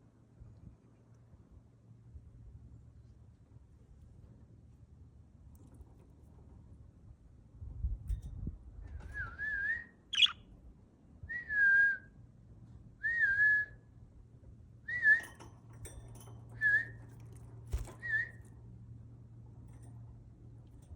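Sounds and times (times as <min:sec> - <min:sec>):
lovebirds whistling: 0:10.1 - 0:10.4
sharp high bird chirp: 0:10.1 - 0:10.4.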